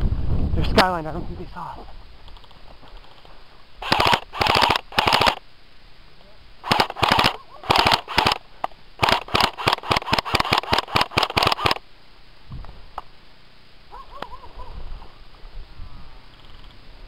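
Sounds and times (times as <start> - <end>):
airsoft gun rapid shots: 3.8 - 5.4, 6.6 - 8.4, 9.0 - 11.8.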